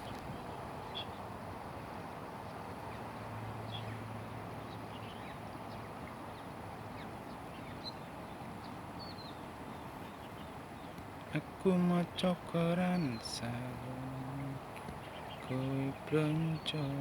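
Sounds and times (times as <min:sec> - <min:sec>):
outdoor background noise: 0:00.0 - 0:17.0
faint bird chirps: 0:10.0 - 0:17.0.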